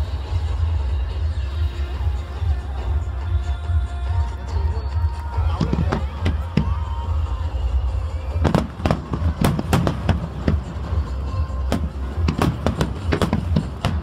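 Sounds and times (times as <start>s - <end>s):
fireworks bangs: 5.3s - 7.6s, 8.2s - 14.0s.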